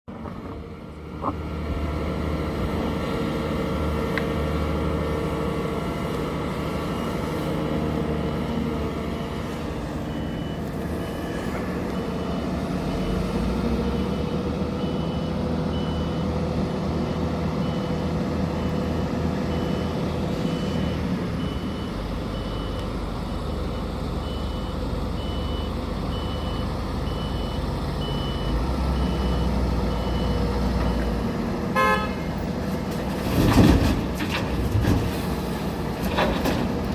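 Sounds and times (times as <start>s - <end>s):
diesel truck engine running: 0.1s - 36.9s
reversing alarm beeping: 9.9s - 16.2s, 17.6s - 31.3s.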